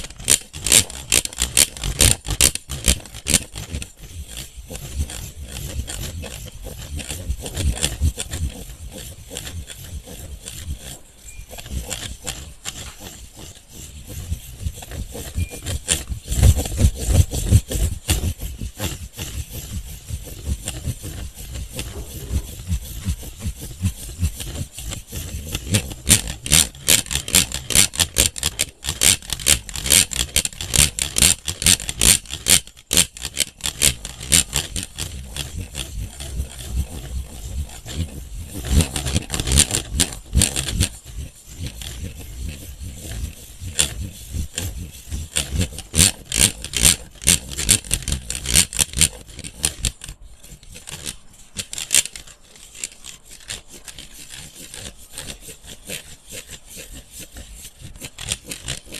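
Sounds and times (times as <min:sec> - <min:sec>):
scratching and tapping on a fan: 0:00.0 - 0:58.9.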